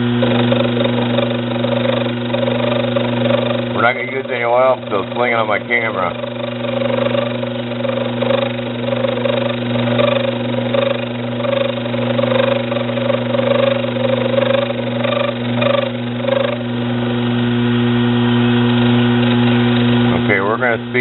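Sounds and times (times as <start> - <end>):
cutting tool scraping steel: 0.0 - 16.7
lathe motor hum: 0.0 - 21.0.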